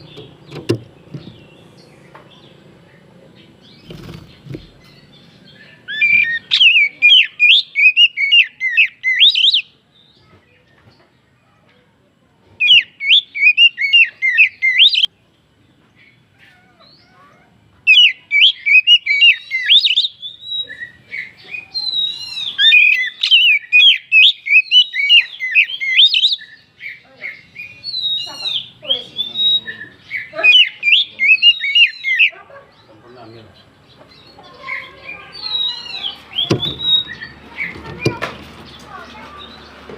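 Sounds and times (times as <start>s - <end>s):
bird singing whistles and chirps: 3.6s - 10.2s, 12.6s - 15.1s, 17.9s - 32.3s, 34.1s - 38.2s.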